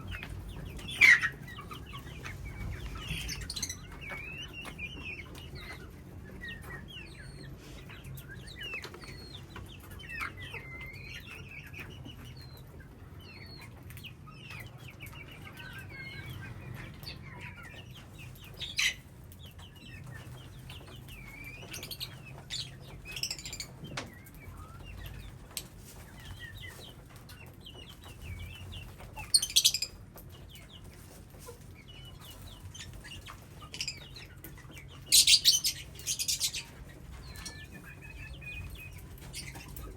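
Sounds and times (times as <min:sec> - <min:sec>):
parrots chirping and calling: 0:00.1 - 0:07.4, 0:21.2 - 0:23.7, 0:29.2 - 0:30.0, 0:32.6 - 0:39.9.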